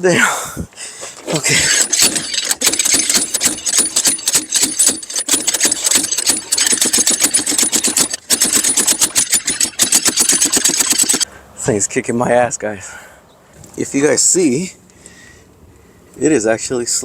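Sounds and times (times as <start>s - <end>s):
impact wrench hammering: 1.6s - 11.2s.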